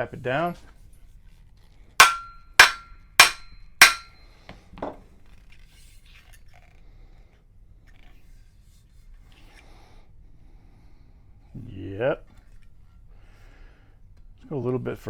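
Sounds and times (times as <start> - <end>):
hammer tapping wood: 2.0 - 4.1.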